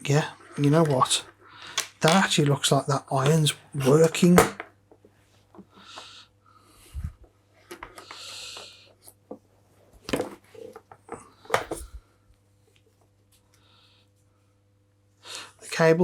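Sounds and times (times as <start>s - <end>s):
short hissing breaths: 5.7s - 7.0s, 8.0s - 8.9s.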